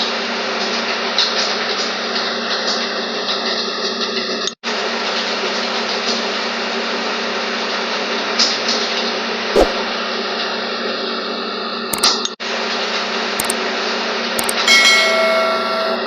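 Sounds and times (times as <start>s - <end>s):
sharp clicks: 12.0s - 12.2s, 14.4s - 14.6s.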